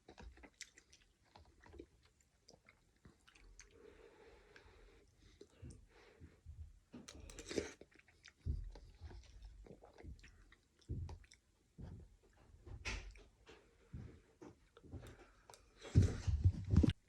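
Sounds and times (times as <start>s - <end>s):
person chewing with mouth smacks: 0.0s - 3.8s, 7.0s - 11.5s.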